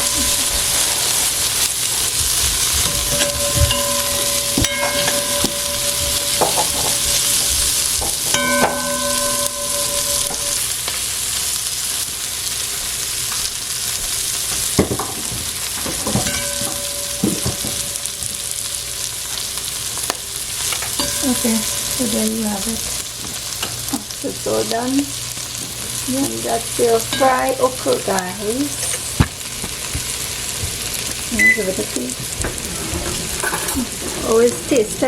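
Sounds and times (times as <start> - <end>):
okra sizzling in oil: 0.0 - 35.0
spoon scraping and knocking pot: 2.6 - 10.6, 14.9 - 18.3.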